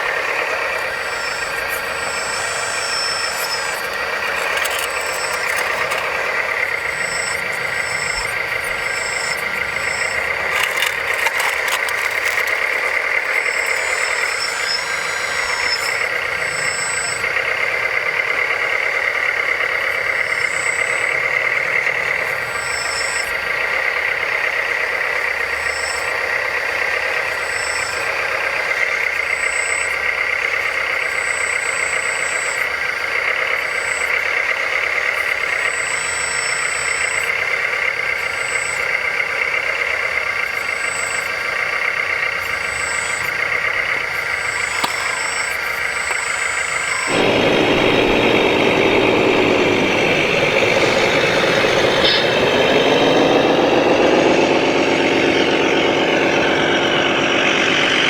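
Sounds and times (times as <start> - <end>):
electric motors high whine: 0.0 - 29.8, 41.2 - 58.0
clicks: 3.6 - 6.4, 10.2 - 15.0, 47.1 - 58.0.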